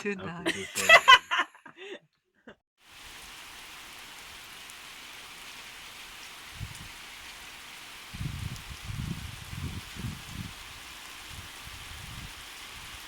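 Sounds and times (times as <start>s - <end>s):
steady rain falling: 2.8s - 13.0s.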